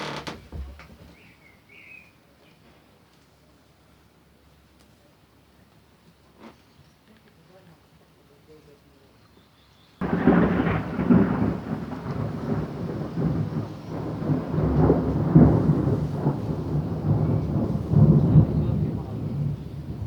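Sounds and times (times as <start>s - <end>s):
rain: 10.0s - 20.0s
rolling thunder rumble: 10.0s - 20.0s.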